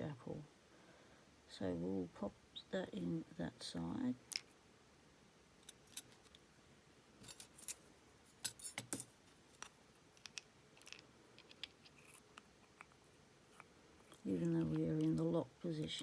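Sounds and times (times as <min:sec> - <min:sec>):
small metal parts clicking on plastic: 0:08.4 - 0:12.9, 0:13.6 - 0:16.0.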